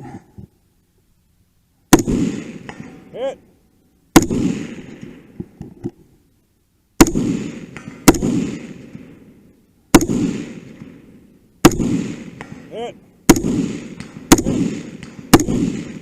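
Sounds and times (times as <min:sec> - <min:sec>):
echoing gunshots: 0:01.9 - 0:03.2, 0:04.1 - 0:05.4, 0:07.0 - 0:16.0.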